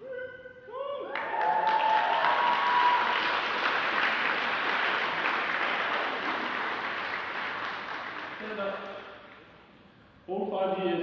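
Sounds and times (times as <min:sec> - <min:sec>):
people whooping: 0:00.7 - 0:03.6
audience clapping: 0:01.1 - 0:09.5.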